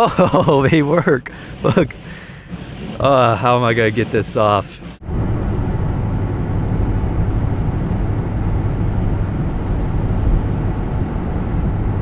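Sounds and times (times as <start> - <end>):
car interior engine and tyre rumble: 5.0 - 12.0.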